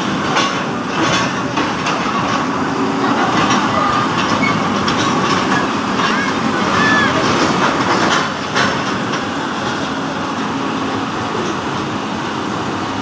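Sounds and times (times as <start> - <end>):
heavy mechanical din: 0.0 - 9.9
sharp metallic clanks: 0.0 - 9.9.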